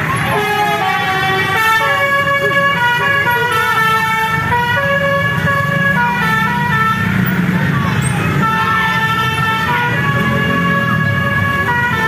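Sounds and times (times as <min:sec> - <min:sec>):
bus engine running: 0:00.0 - 0:12.0
multi-tone musical air horn: 0:00.2 - 0:04.4.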